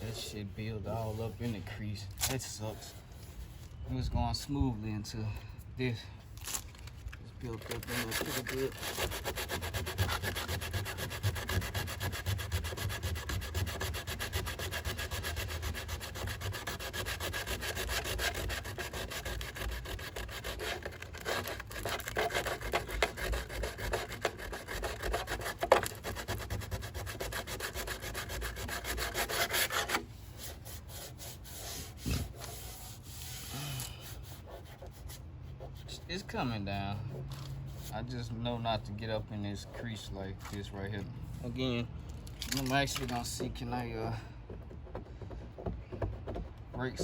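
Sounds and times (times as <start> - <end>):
sandpaper rasping on body filler: 0.0 - 1.7, 7.4 - 38.1.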